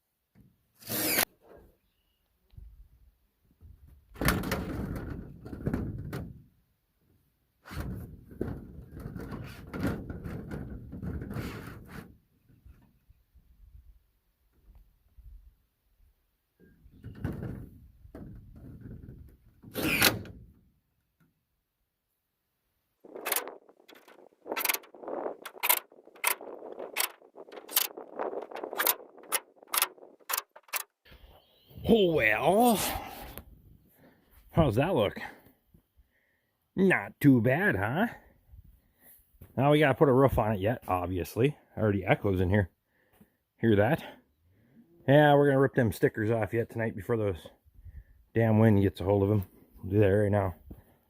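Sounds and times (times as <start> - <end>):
plastic panels rattling and knocking: 4.1 - 6.4, 7.7 - 12.0, 16.9 - 20.5, 23.1 - 31.0.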